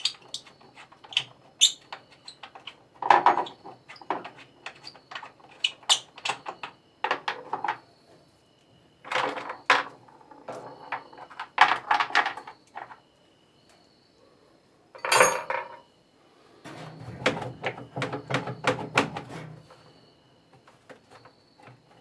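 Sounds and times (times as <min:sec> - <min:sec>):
metal tools clanking and scraping: 0:15.0 - 0:15.8, 0:16.7 - 0:19.8.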